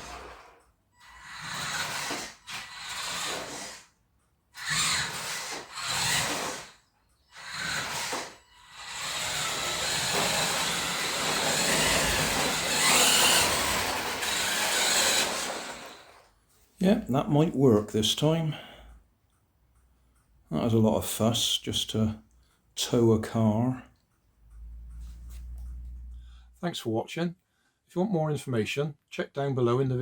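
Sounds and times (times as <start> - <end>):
toy car motor whirring: 0.0 - 16.3.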